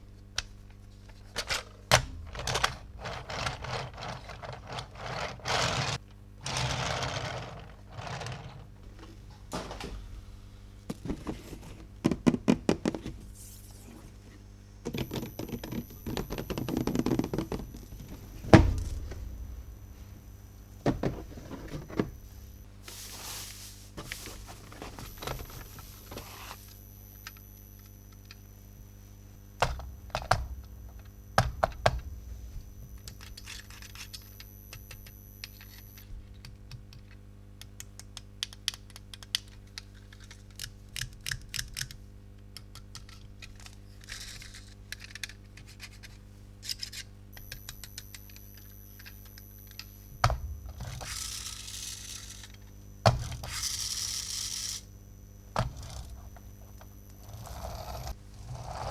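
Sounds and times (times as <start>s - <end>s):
plastic toy parts clicking: 36.7s - 42.0s.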